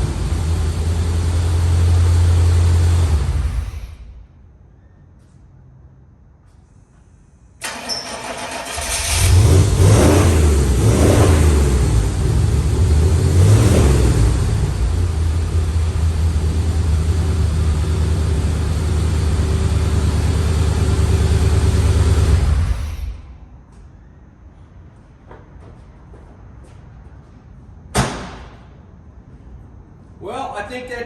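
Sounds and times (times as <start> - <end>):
truck engine starting and revving: 0.0 - 3.6, 7.6 - 23.2
engine idling: 0.0 - 3.8, 14.1 - 23.2.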